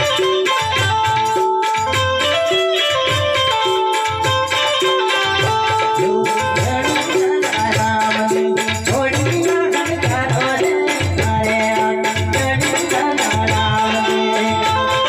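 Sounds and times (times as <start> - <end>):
shaker-like percussion: 0.0 - 15.0
steady drum beat: 0.0 - 15.0.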